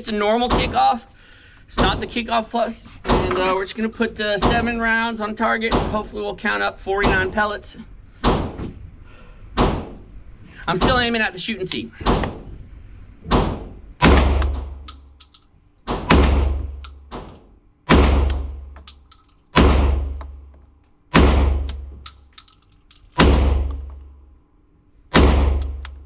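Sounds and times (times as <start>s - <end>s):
shotgun shots: 13.3s - 14.9s, 15.9s - 17.3s, 17.9s - 18.7s, 19.6s - 20.2s, 21.1s - 21.9s, 23.2s - 23.9s, 25.1s - 25.8s.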